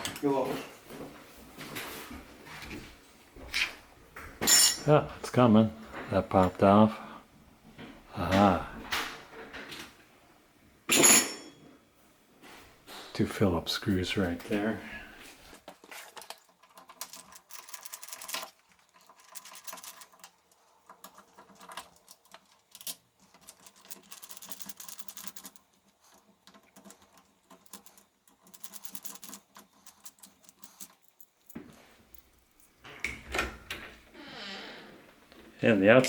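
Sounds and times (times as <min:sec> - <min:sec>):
lock parts rattling: 0:15.7 - 0:34.0.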